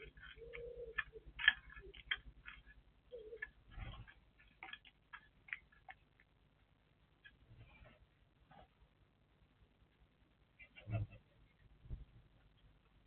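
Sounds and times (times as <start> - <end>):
small birds chirping: 0.0 - 6.4.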